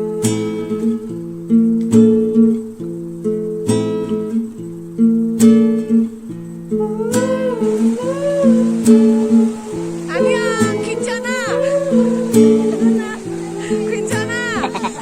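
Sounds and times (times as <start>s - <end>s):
person singing: 0.0s - 1.0s, 6.8s - 15.0s
acoustic guitar strumming: 0.0s - 15.0s.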